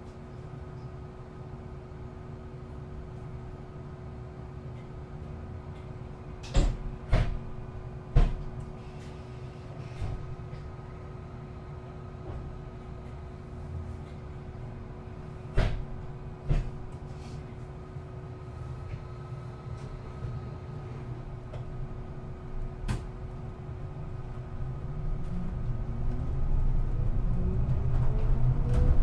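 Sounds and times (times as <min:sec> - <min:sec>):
bus engine hum: 0:00.0 - 0:29.0
bus body knocks and rattles: 0:05.8 - 0:08.8, 0:09.8 - 0:10.7, 0:15.2 - 0:17.1.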